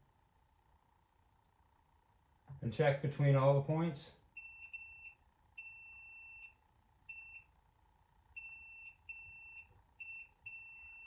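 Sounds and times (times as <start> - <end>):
multimeter beeps: 4.3 - 7.5, 8.4 - 11.0.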